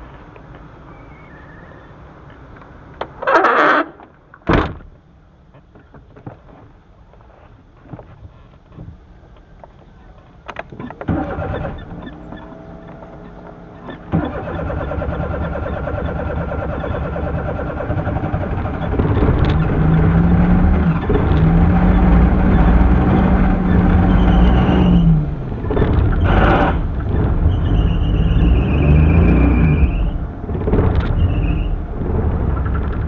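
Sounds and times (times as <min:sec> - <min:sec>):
starter cranking engine: 0:10.9 - 0:12.5, 0:13.8 - 0:29.0, 0:29.6 - 0:33.0
car engine revving: 0:11.1 - 0:33.0
car engine running unevenly: 0:11.2 - 0:33.0.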